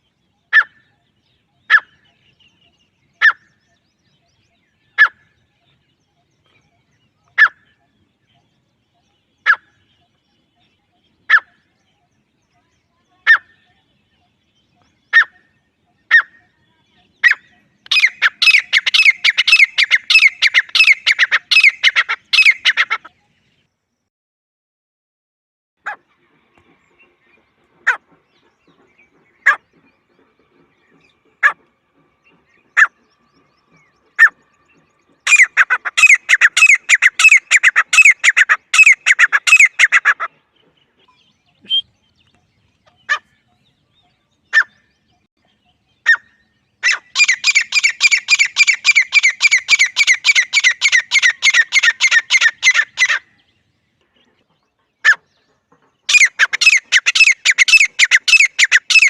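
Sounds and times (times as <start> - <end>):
francolin calls: 9.0 - 23.2, 35.2 - 40.3, 45.6 - 53.4, 56.1 - 59.0.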